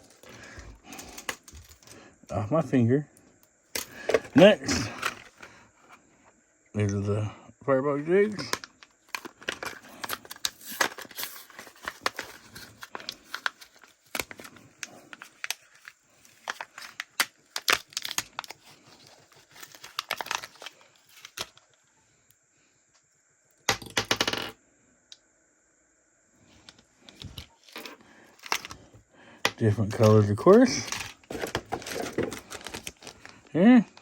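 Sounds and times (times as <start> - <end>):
plastic packaging crinkling and tearing: 8.3 - 21.6, 29.8 - 33.5.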